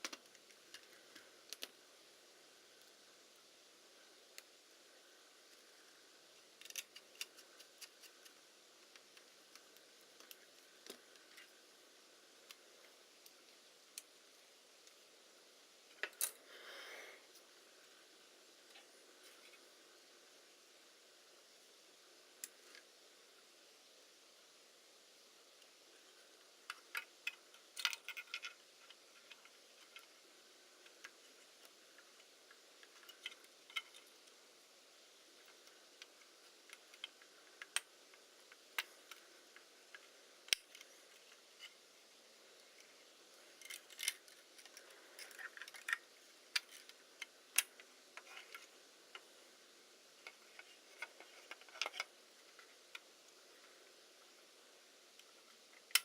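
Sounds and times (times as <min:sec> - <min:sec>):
small parts and tools clicking: 0:00.0 - 0:01.8, 0:05.3 - 0:11.7, 0:15.9 - 0:16.5, 0:26.4 - 0:41.9, 0:42.6 - 0:49.4, 0:50.1 - 0:54.4, 0:55.1 - 0:56.0.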